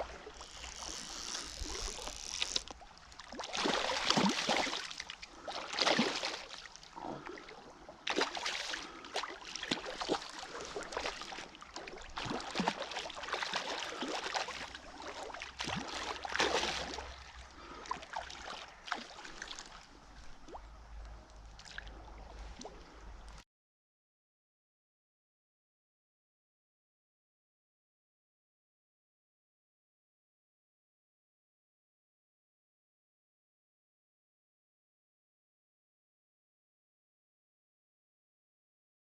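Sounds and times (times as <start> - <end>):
river water splashing: 0.0 - 23.4.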